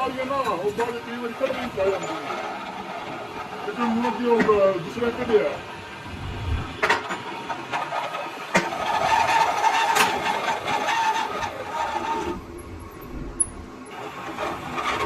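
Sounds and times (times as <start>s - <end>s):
lathe cutting metal: 7.0s - 12.4s, 13.8s - 15.0s.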